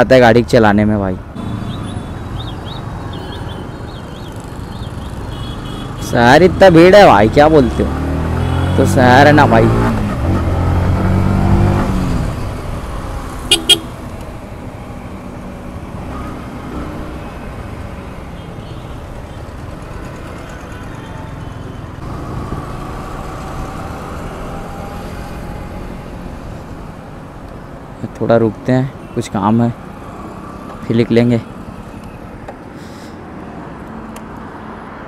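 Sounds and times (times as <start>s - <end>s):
street traffic: 0.0s - 35.0s
car horn tooting: 13.5s - 14.0s.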